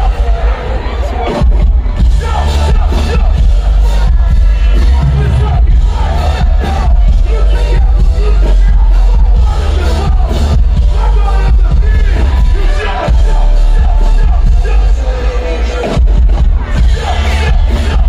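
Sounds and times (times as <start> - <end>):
hip-hop music with heavy bass: 0.0 - 18.0.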